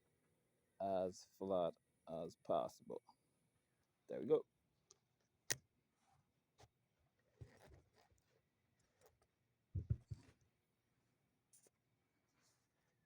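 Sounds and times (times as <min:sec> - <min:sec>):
soft thumps of rubber tube: 0:09.8 - 0:10.3.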